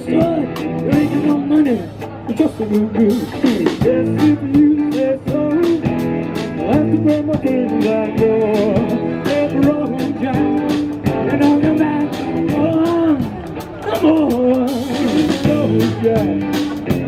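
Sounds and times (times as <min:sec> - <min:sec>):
person singing: 0:00.0 - 0:05.9, 0:06.6 - 0:16.9
strummed and plucked guitar: 0:00.0 - 0:17.0.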